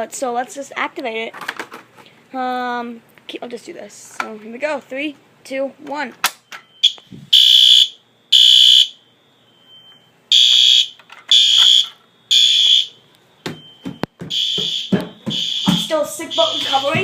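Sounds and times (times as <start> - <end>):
fire alarm beeping: 6.5 - 17.0.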